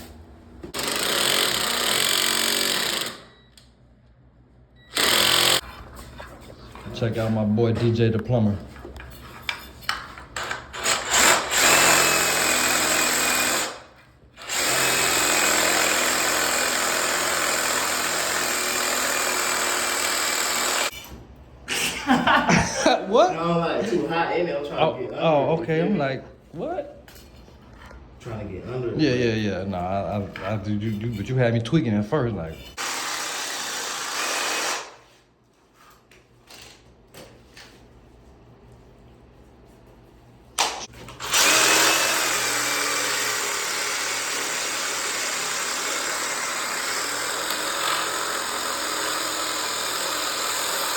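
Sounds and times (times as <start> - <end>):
electric power tool running: 4.9 - 5.6, 10.8 - 13.8, 14.4 - 20.9, 41.2 - 50.9.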